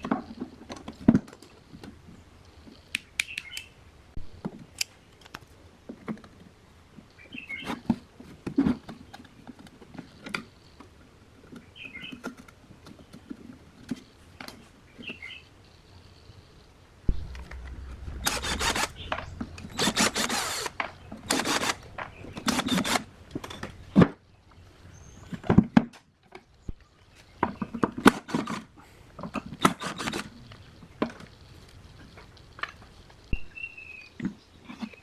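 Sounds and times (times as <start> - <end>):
hand tool rubbing strokes: 18.2 - 19.0, 19.7 - 23.1.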